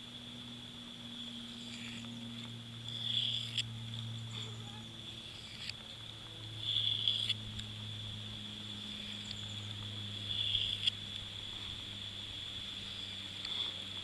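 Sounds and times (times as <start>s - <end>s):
insects trilling: 0.0s - 14.0s
low hum: 0.0s - 14.0s
knife blade rasping on cord: 1.5s - 5.8s, 6.6s - 7.4s, 10.3s - 11.0s.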